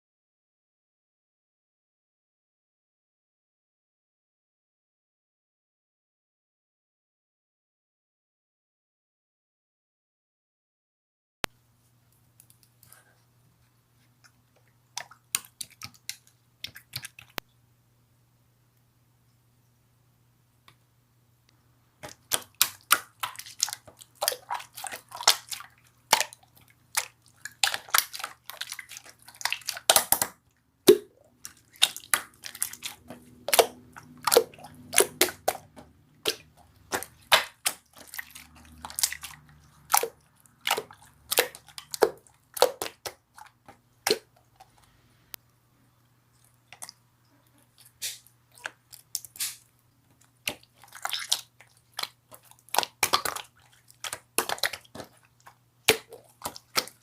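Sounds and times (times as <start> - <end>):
slime clicking and popping: 22.0 - 44.3, 50.5 - 55.2.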